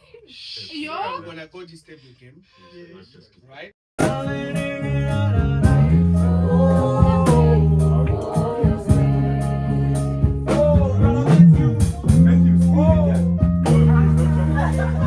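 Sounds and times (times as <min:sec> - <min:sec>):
song with singing voice: 0:04.0 - 0:12.9.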